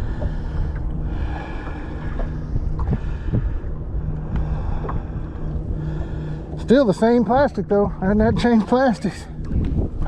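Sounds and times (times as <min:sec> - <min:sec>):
boat motor humming: 0:00.0 - 0:10.0
wind noise on microphone: 0:01.1 - 0:06.2, 0:08.0 - 0:10.0.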